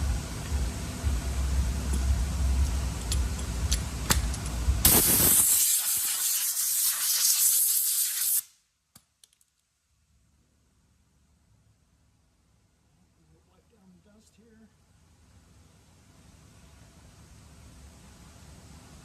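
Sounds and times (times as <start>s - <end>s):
low rumbling noise: 0.0s - 5.4s
spray paint hiss: 1.9s - 8.6s.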